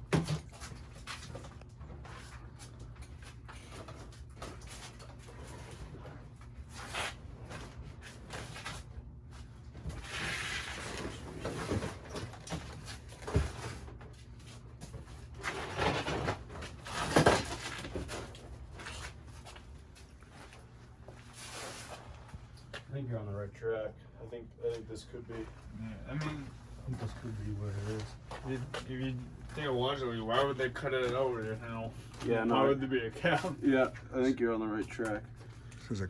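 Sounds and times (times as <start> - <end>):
steady low hum: 0.4 - 36.0
objects knocking and scraping: 14.9 - 19.1.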